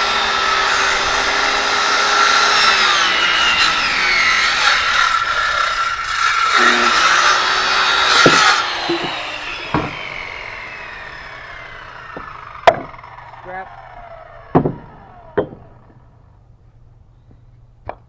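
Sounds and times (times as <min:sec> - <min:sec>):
saw blade spinning down: 0:00.0 - 0:16.3
circular saw cutting wood: 0:00.0 - 0:16.4
wooden boards knocking: 0:08.1 - 0:10.1, 0:12.1 - 0:12.9, 0:14.6 - 0:16.0.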